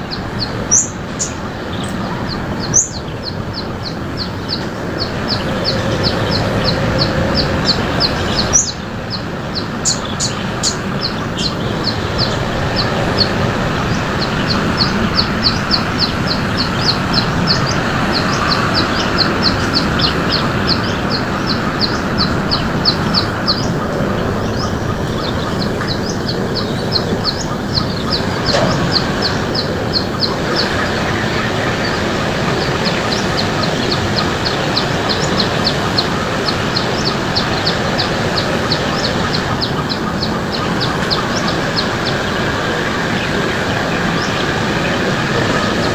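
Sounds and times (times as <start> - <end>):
steady rushing noise: 0.0 - 45.9.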